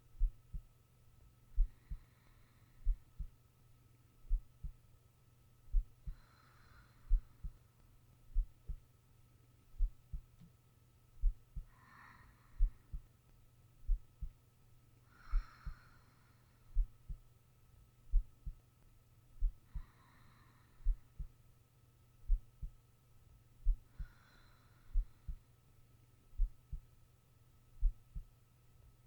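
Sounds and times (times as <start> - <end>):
faint steady hum: 0.0 - 29.0
heartbeat thumps: 0.2 - 0.7, 1.6 - 2.0, 2.8 - 3.3, 4.2 - 4.8, 5.7 - 6.2, 7.1 - 7.6, 8.3 - 8.8, 9.8 - 10.3, 11.2 - 11.7, 12.6 - 13.0, 13.8 - 14.4, 15.3 - 15.8, 16.8 - 17.2, 18.1 - 18.6, 19.4 - 19.9, 20.8 - 21.3, 22.3 - 22.8, 23.6 - 24.1, 24.9 - 25.4, 26.4 - 26.8, 27.8 - 28.3
soft breaths: 1.5 - 3.5, 5.7 - 8.9, 11.2 - 14.4, 15.0 - 17.3, 19.4 - 21.6, 22.3 - 27.0.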